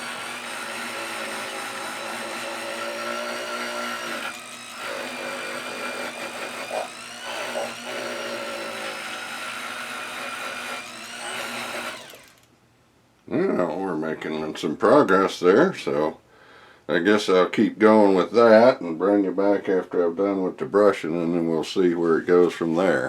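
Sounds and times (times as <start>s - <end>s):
power wire brush whining on metal: 0.0s - 12.5s.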